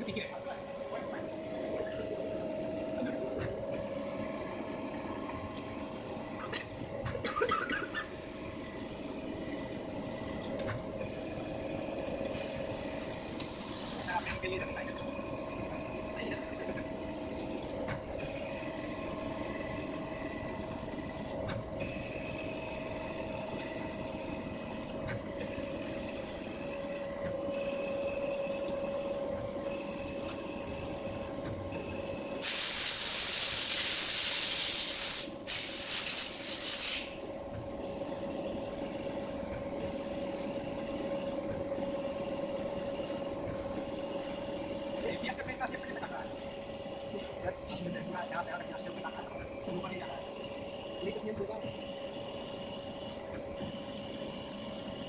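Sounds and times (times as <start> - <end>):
lathe machine whine: 0.0 - 55.0
loud hiss: 32.4 - 37.2.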